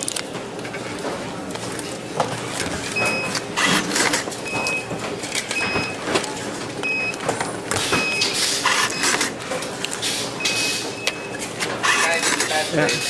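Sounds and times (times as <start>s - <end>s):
mechanical clatter and hiss: 7.3s - 10.9s, 11.6s - 13.0s.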